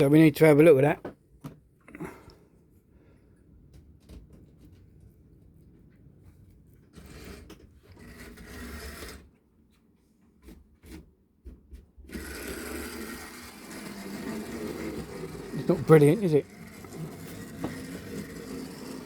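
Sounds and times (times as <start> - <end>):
model train motor whirring: 7.0 - 9.3, 12.1 - 19.0.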